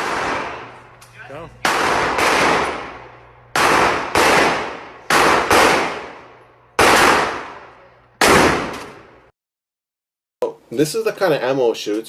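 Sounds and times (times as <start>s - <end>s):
gunshots with echo: 0.0s - 0.8s, 1.6s - 9.1s.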